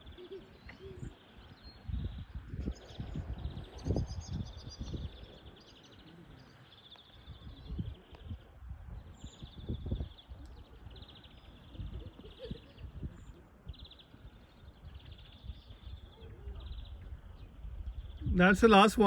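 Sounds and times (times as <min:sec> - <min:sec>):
birds chirping in trills: 0:00.0 - 0:19.0
low rumbling gusts: 0:14.8 - 0:19.0.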